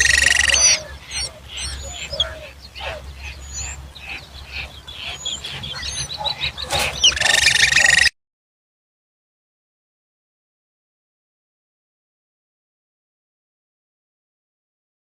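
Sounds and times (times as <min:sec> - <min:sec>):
birds squawking and chirping: 0:00.0 - 0:08.1
drawn-out bird call: 0:00.0 - 0:08.1.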